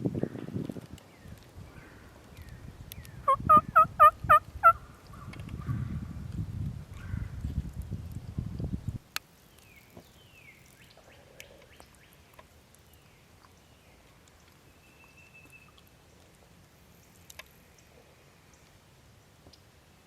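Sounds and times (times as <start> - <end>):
bird chirps: 14.6 - 15.8.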